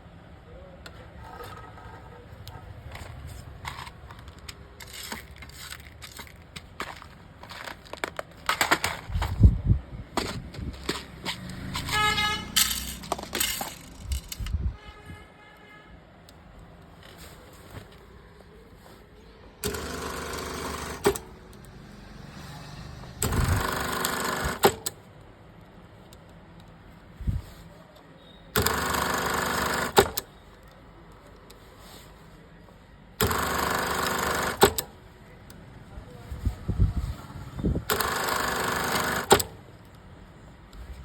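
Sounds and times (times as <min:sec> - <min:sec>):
sewing machine sewing: 0:19.6 - 0:21.4, 0:22.8 - 0:24.9, 0:28.6 - 0:30.3, 0:33.2 - 0:35.0, 0:37.9 - 0:39.6.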